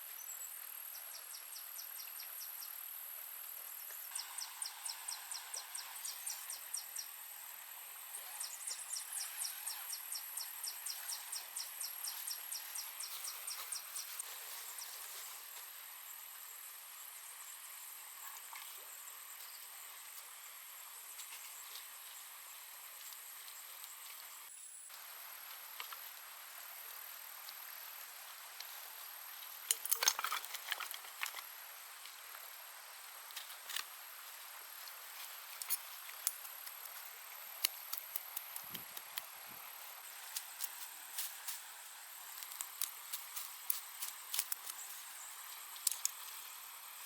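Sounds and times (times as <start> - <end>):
insects chirring: 0.2 - 47.0
sharp clicks and crackles: 37.6 - 39.3, 42.4 - 44.9, 45.8 - 46.2.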